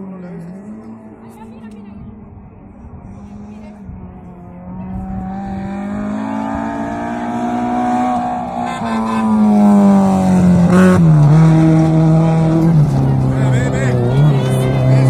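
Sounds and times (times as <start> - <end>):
rally car engine running hard: 0.2 - 15.0.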